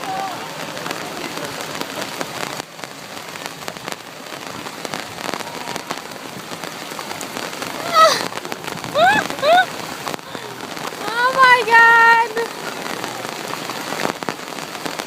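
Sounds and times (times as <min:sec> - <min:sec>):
heavy rain pouring: 0:00.0 - 0:15.0
person exclaiming: 0:07.8 - 0:08.3, 0:08.9 - 0:09.7, 0:10.3 - 0:12.5.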